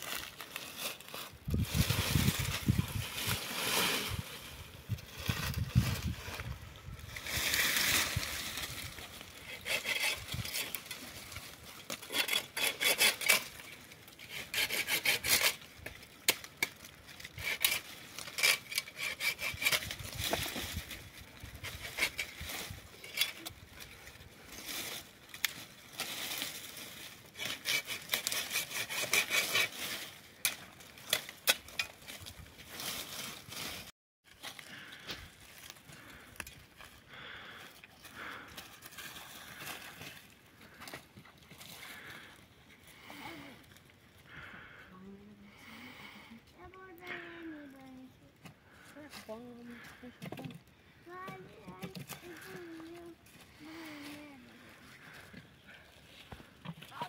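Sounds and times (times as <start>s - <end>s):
rasping scraping on wood: 9.4s - 10.9s, 12.0s - 13.5s, 14.2s - 15.6s, 17.4s - 19.9s, 27.4s - 29.8s.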